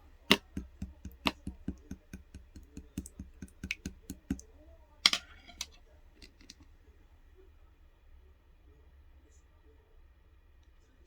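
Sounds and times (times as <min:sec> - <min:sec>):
slime squeezed by hand clicking: 0:00.3 - 0:04.4.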